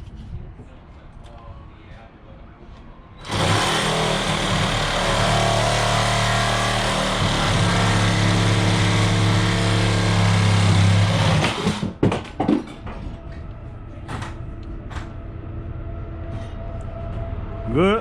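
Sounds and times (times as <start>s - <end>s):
reciprocating saw cutting: 3.2s - 12.0s
knocks and clanks: 3.2s - 15.2s.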